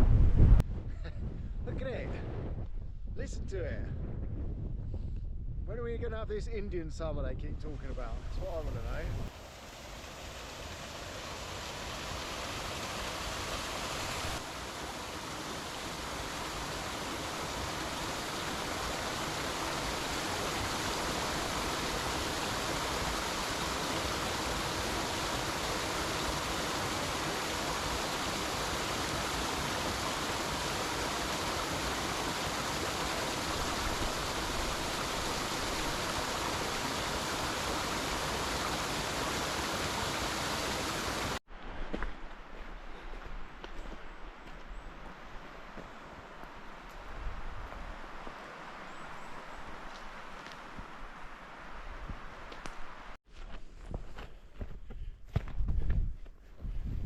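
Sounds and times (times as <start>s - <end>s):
strong wind buffeting microphone: 0.0s - 9.3s, 55.4s - 57.0s.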